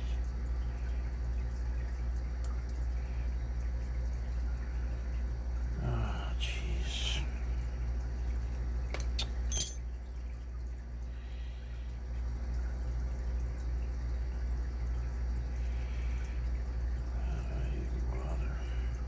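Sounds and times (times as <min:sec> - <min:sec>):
steady low hum: 0:00.0 - 0:19.0
metallic clicks of lock parts: 0:08.9 - 0:09.8.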